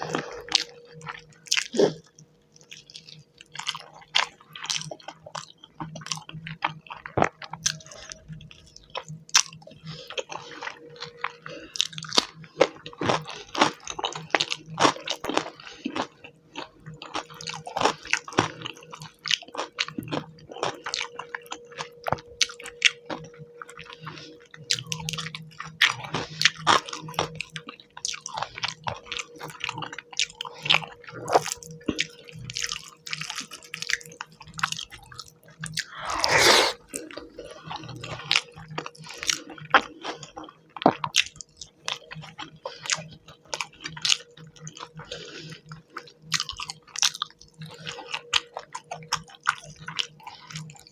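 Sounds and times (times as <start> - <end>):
faint steady hum: 0.0 - 4.5.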